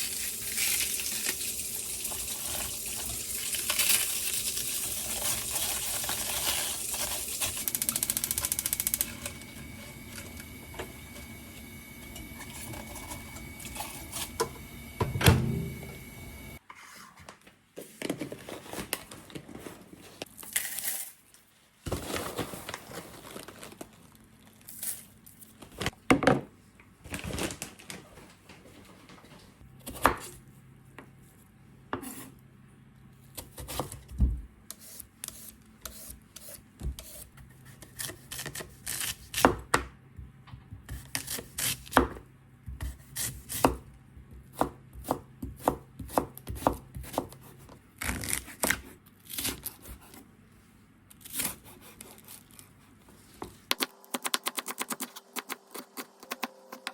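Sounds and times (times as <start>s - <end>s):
scrapes and clatter of handling food: 16.7s - 26.0s.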